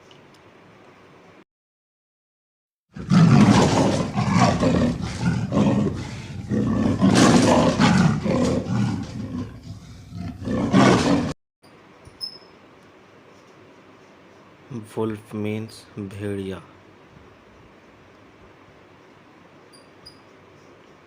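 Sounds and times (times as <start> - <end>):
leopard roaring: 2.9 - 11.4.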